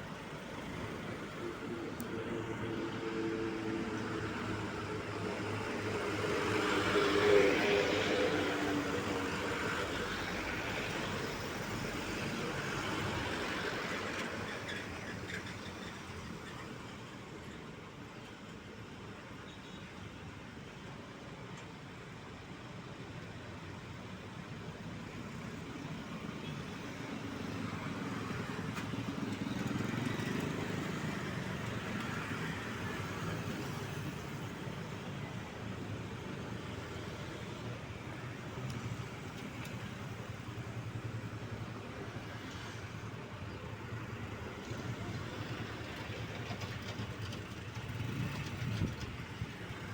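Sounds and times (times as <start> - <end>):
truck engines passing: 26.5 - 49.9.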